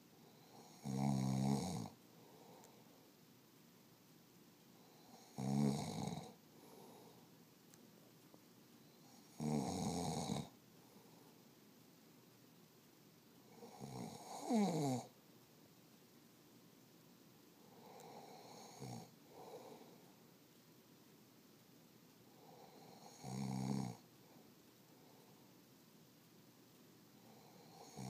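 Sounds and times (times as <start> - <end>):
man snoring: 0.3 - 2.0, 4.9 - 6.4, 9.0 - 10.5, 13.5 - 15.1, 17.8 - 19.8, 22.4 - 24.0, 27.3 - 28.0.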